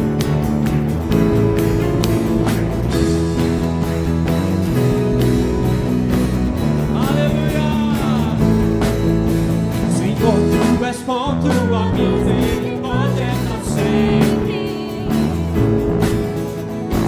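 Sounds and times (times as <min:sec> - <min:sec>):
worship band with guitar: 0:00.0 - 0:17.0
person singing: 0:06.8 - 0:08.9, 0:09.8 - 0:15.6.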